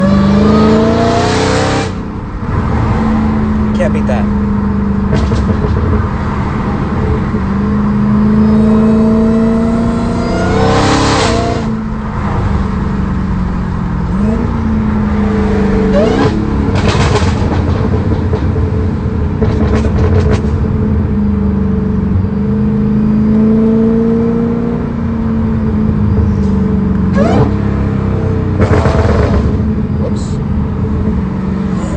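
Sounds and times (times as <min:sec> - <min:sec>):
car engine revving: 0:00.0 - 0:31.9
exhaust crackles and pops: 0:05.0 - 0:06.2, 0:16.6 - 0:20.7, 0:28.6 - 0:29.7.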